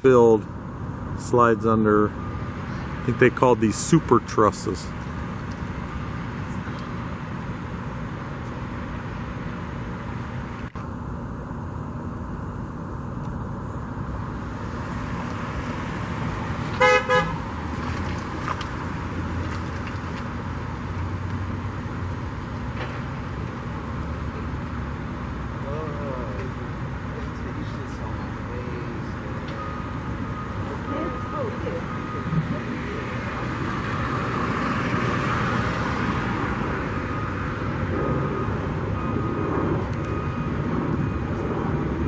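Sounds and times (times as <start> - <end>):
street traffic noise: 0.0 - 42.0
vehicle horn tooting: 16.8 - 17.4.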